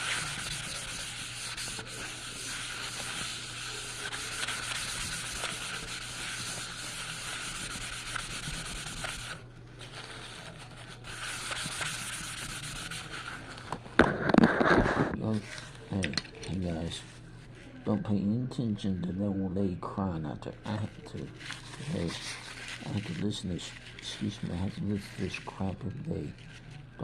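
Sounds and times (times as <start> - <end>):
drawing tool scratching paper: 0.0 - 9.4, 10.1 - 13.5
low electrical hum: 0.0 - 27.0.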